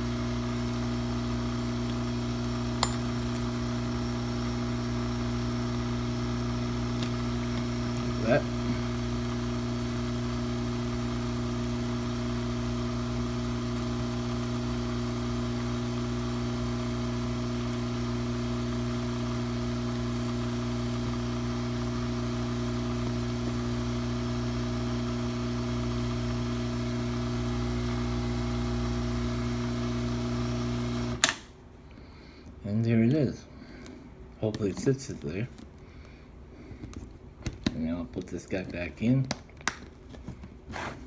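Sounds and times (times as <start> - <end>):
hot-air tool fan whirring: 0.0 - 32.3.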